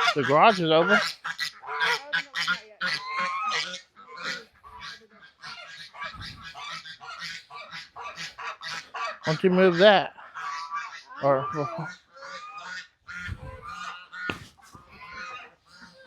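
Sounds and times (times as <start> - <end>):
waterfowl honking: 0.0 - 16.0.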